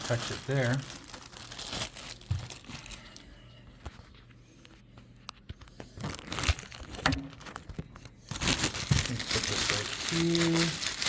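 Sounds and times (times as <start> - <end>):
plastic packaging crinkling: 0.0 - 3.4, 5.6 - 11.0.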